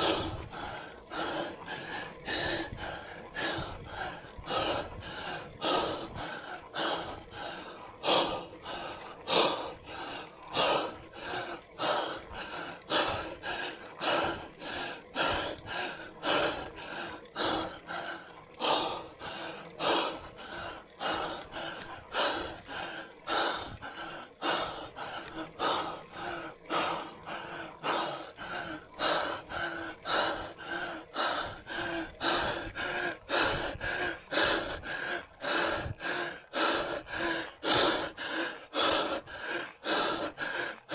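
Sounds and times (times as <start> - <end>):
person breathing hard: 0.0 - 40.9.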